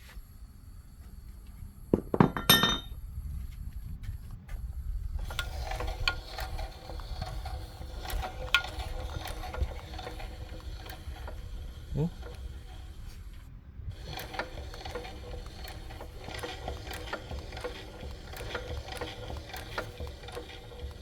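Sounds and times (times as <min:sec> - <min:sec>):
metal tools clinking: 0:02.2 - 0:02.9.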